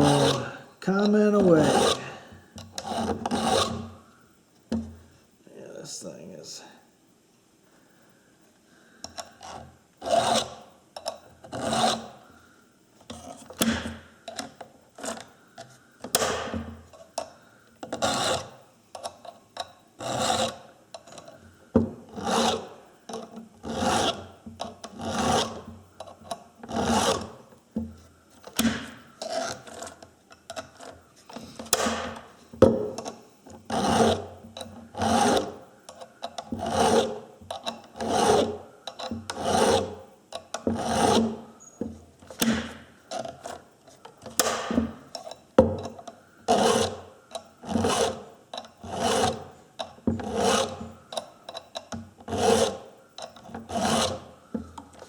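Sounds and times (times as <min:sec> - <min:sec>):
file rasping on chainsaw chain: 0:00.0 - 0:02.1, 0:02.8 - 0:03.9, 0:09.4 - 0:10.6, 0:11.5 - 0:12.2, 0:17.9 - 0:18.5, 0:20.0 - 0:21.3, 0:22.1 - 0:22.7, 0:23.6 - 0:24.3, 0:24.9 - 0:25.7, 0:26.7 - 0:27.3, 0:33.7 - 0:35.6, 0:36.5 - 0:39.9, 0:40.7 - 0:41.4, 0:45.2 - 0:54.3.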